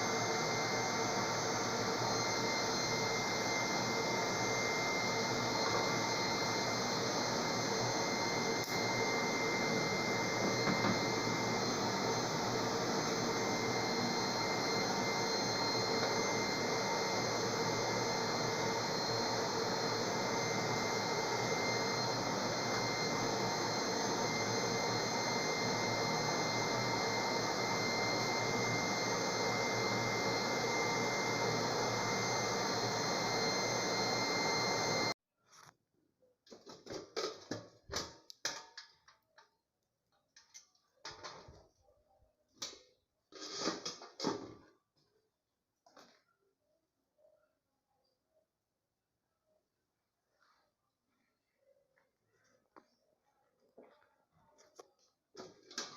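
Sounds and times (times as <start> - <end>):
hair dryer blowing air: 0.0 - 35.2.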